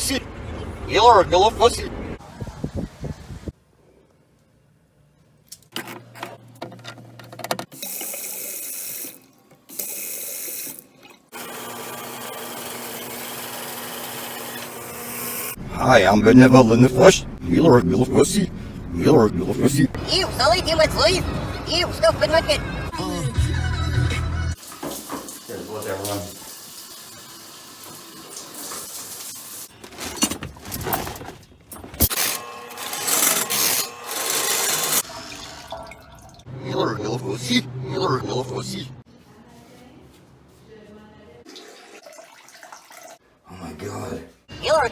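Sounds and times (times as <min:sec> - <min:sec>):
water running from a tap: 0:24.6 - 0:29.7, 0:41.5 - 0:43.2.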